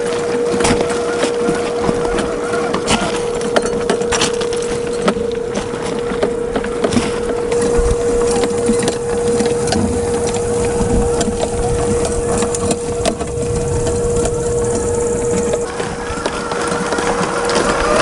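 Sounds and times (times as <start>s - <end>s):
electric motor and gears whining: 0.0s - 18.0s
tyres clicking on rough ground: 0.0s - 18.0s
low rumble: 4.5s - 16.4s.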